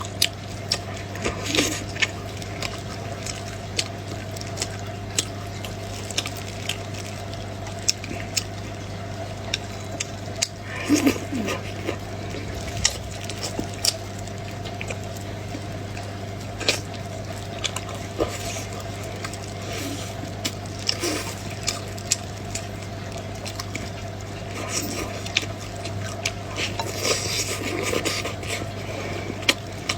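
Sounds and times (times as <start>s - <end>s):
mouth chewing food: 0.0s - 29.9s
low hum: 11.0s - 14.4s.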